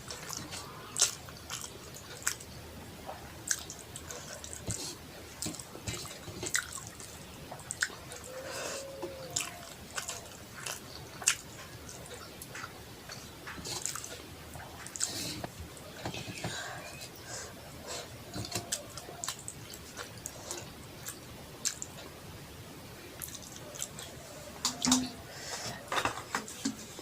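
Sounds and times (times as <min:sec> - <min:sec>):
wet chewing and mouth smacking: 0:00.0 - 0:08.4, 0:09.0 - 0:22.2, 0:23.2 - 0:25.2
lip smacks and clicks: 0:18.4 - 0:22.1.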